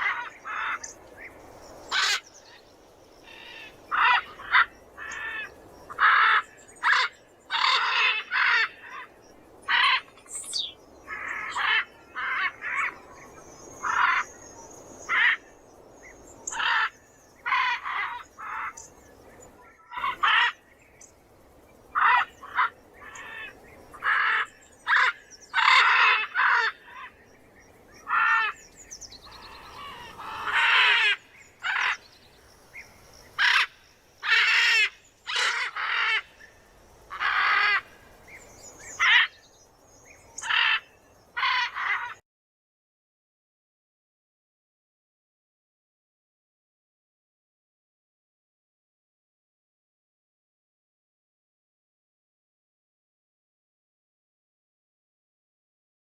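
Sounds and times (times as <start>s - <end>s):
macaw squawking: 1.9s - 2.2s, 3.3s - 8.8s, 22.0s - 27.1s, 33.4s - 36.3s, 40.4s - 42.2s.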